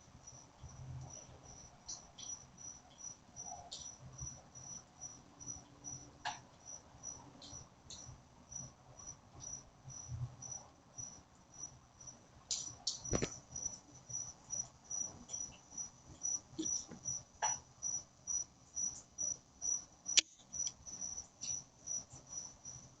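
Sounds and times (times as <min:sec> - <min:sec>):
crickets chirping: 0:00.0 - 0:23.0
sharp clicks: 0:12.5 - 0:13.4.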